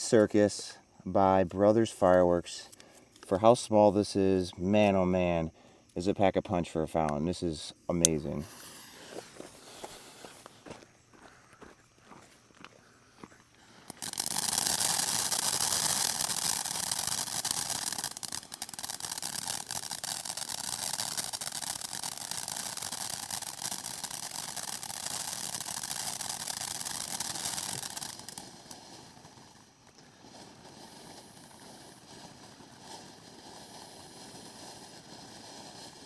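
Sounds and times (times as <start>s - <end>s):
firework fountain hissing: 8.0s - 11.3s, 13.2s - 36.0s.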